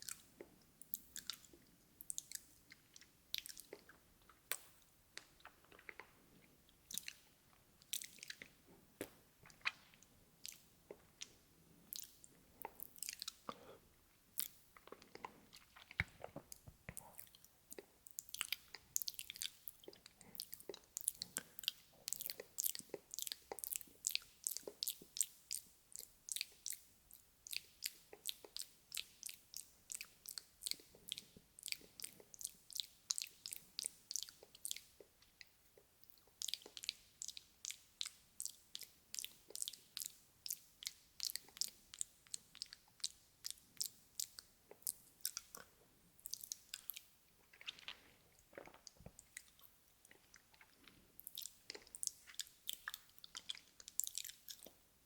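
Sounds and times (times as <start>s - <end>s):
wet lip and tongue clicks: 0.0s - 13.7s, 14.4s - 54.8s.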